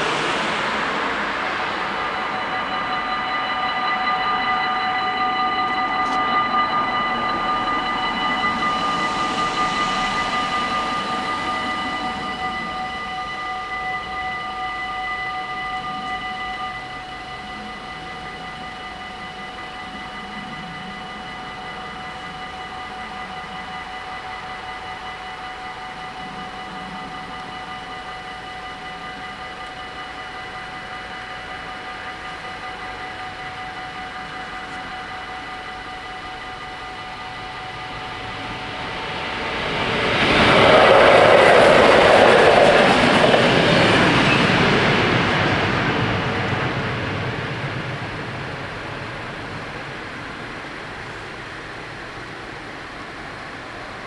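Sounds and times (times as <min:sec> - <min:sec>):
level crossing bells ringing: 0:00.0 - 0:18.4, 0:34.2 - 0:47.0
train passing over crossing: 0:00.0 - 0:54.0
train wheel and rail noise: 0:00.0 - 0:54.0.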